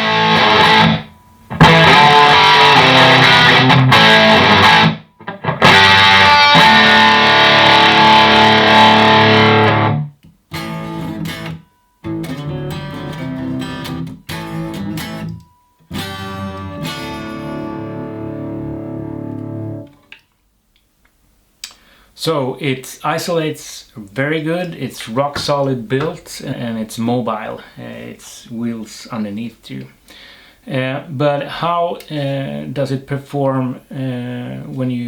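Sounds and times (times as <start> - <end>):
distorted electric guitar riffs: 0.0 - 20.2.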